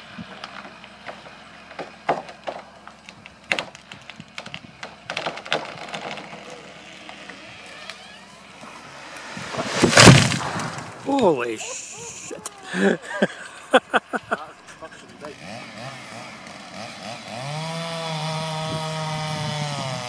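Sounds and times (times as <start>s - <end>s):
tree cracking and splintering: 0.0s - 11.6s
rush of falling tree: 3.5s - 12.9s
heavy crash on ground: 8.6s - 11.6s.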